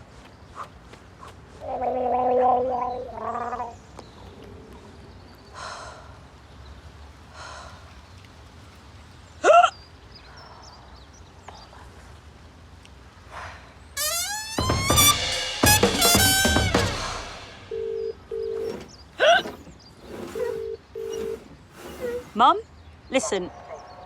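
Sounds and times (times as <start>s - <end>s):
sharp hiccup with squeak: 14.0s - 16.9s.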